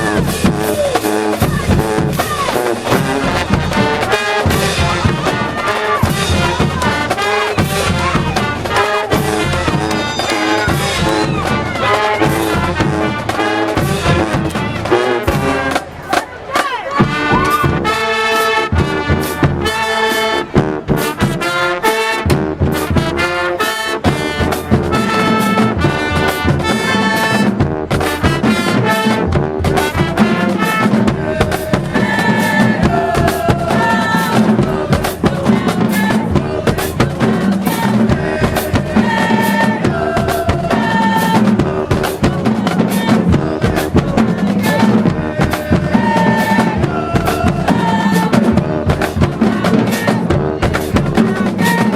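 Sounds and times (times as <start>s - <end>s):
drums beating: 0.0s - 19.8s, 24.0s - 51.9s
trumpets and trombones: 0.0s - 51.9s.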